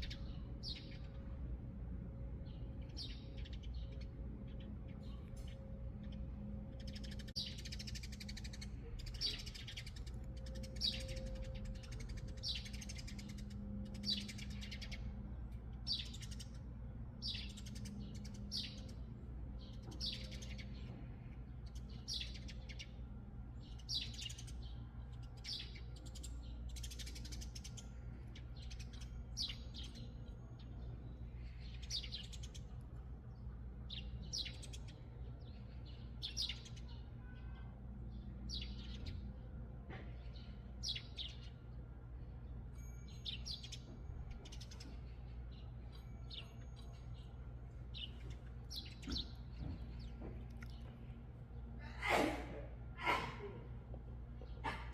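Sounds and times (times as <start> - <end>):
sparrow chirping: 0.0 - 1.6, 2.3 - 52.1
steady low hum: 0.0 - 54.9.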